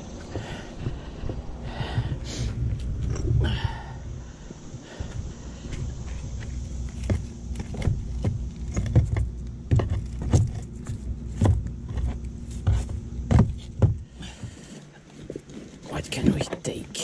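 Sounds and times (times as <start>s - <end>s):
steady low rumble: 0.0s - 17.0s
knocks of objects being handled: 6.9s - 15.6s.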